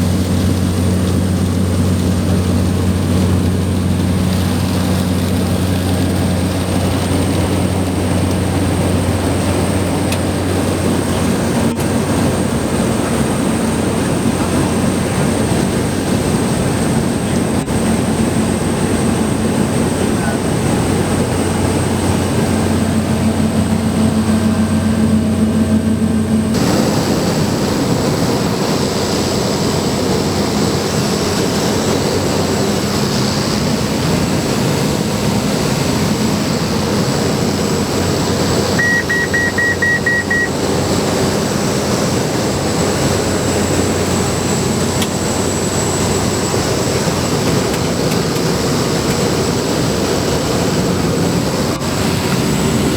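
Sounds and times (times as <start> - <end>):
propeller plane cabin drone: 0.0 - 52.9
short high beeps: 38.8 - 40.6.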